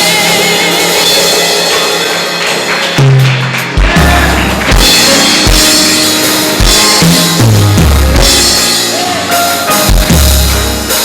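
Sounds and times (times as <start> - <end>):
drum kit: 0.0 - 11.0
held chords: 0.0 - 11.0
deep bass notes: 3.0 - 11.0.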